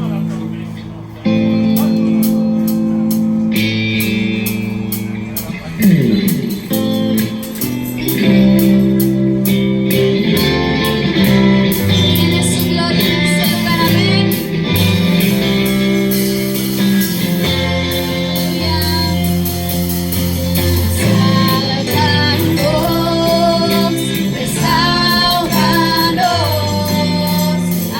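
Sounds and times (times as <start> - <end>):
guitar and bass chords: 0.0 - 27.9
person singing: 11.2 - 16.2, 18.1 - 27.9.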